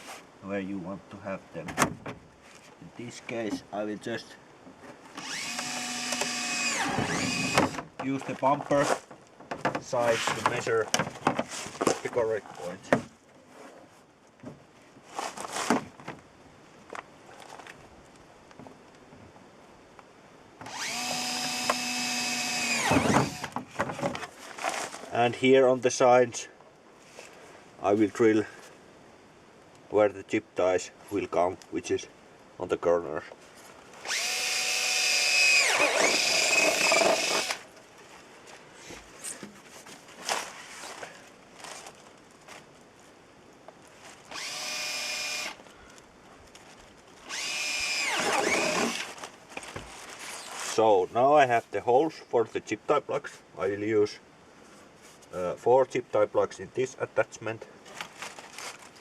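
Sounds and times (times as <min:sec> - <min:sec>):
electric drill whirring: 0:05.2 - 0:07.8, 0:20.6 - 0:23.5, 0:34.0 - 0:37.6, 0:44.3 - 0:45.6, 0:47.3 - 0:49.2.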